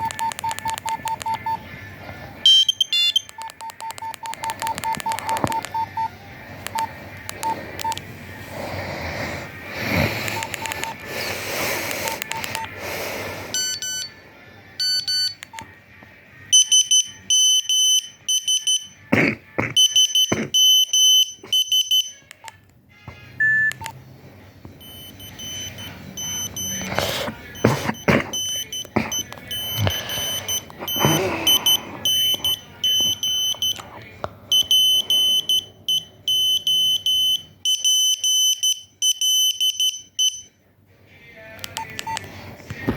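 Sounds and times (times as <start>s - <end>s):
mobile phone ringtone beeps: 0.0s - 1.6s, 2.4s - 8.0s, 13.6s - 14.2s, 14.8s - 15.5s, 23.4s - 24.0s, 24.8s - 26.9s, 28.0s - 33.8s, 34.5s - 40.5s.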